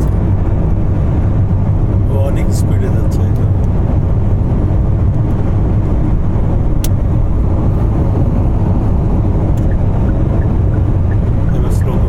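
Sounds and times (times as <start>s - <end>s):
car engine and tyres rumbling: 0.0s - 12.0s.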